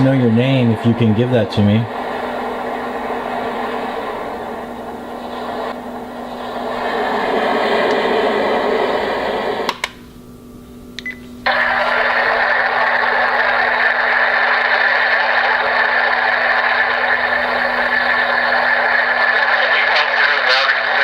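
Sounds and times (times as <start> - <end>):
white noise machine hiss: 0.0 - 21.0
switch clicks: 9.7 - 10.0.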